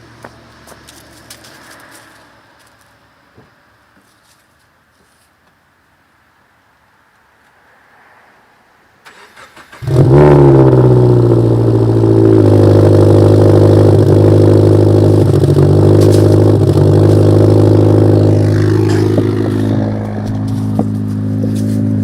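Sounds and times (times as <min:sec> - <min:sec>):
car engine starting and idling: 0:09.0 - 0:22.0.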